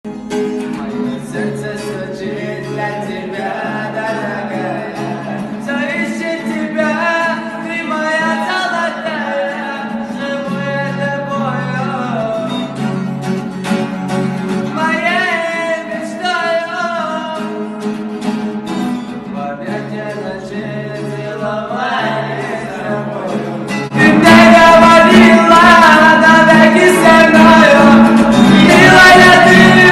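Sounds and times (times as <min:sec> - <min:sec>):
person singing: 0:19.4 - 0:29.9.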